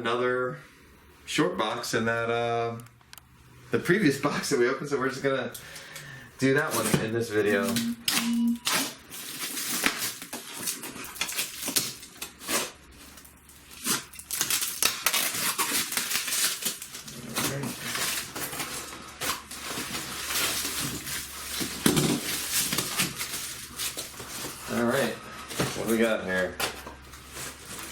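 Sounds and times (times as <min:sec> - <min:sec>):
cardboard rustling and scraping: 0:15.1 - 0:27.9.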